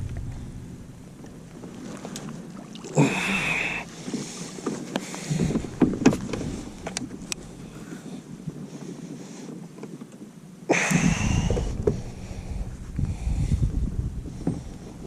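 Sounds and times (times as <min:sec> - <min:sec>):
sharp knocks and thumps: 0:00.0 - 0:01.7.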